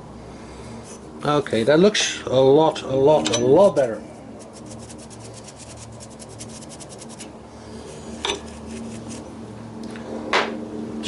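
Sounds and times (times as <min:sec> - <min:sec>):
rapid scratching on spinning wood: 0:03.6 - 0:09.3.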